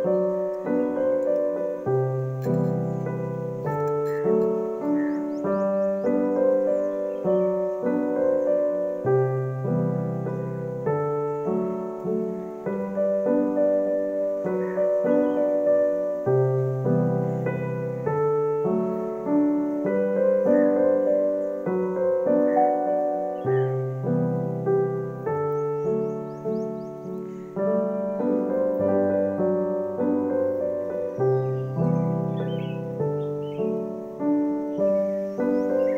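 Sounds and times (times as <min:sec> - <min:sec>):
gentle piano melody: 0:00.0 - 0:35.9.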